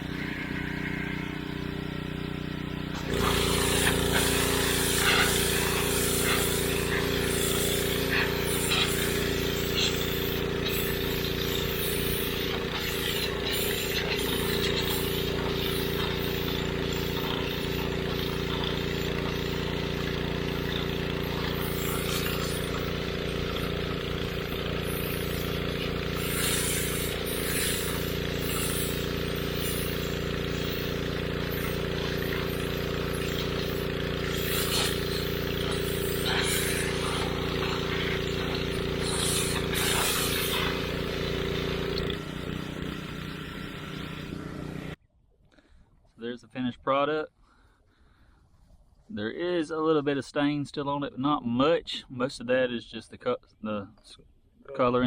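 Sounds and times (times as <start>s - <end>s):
pressure washer spray hissing: 0.0s - 45.0s.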